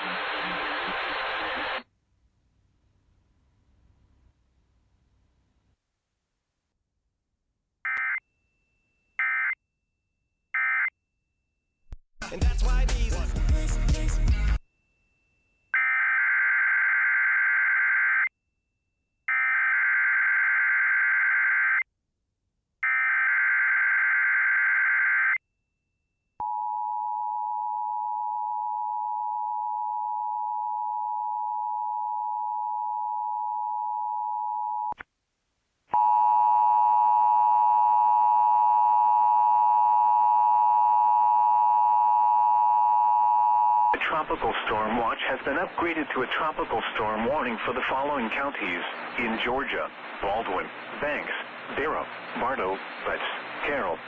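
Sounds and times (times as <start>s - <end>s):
buzzy steady tone: 0.0s - 1.8s.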